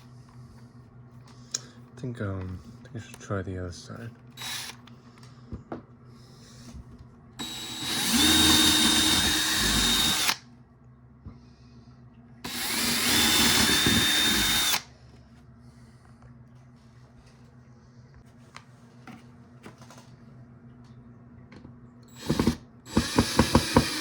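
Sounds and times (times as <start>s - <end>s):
power drill whining: 4.4s - 4.9s, 7.4s - 10.4s, 12.4s - 14.8s, 22.1s - 24.0s.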